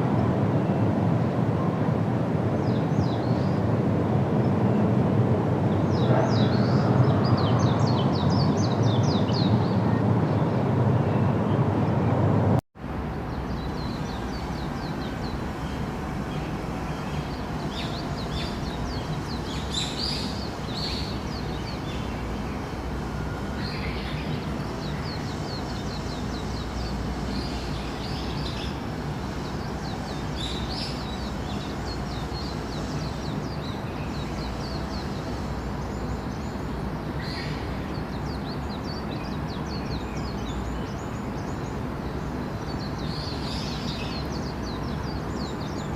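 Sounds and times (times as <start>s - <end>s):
small birds chirping: 13.1s - 45.9s.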